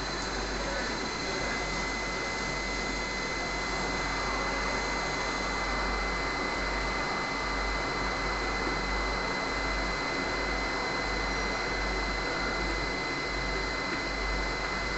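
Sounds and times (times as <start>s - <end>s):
machine motor hum: 0.0s - 14.9s
thin high whine: 0.0s - 14.9s.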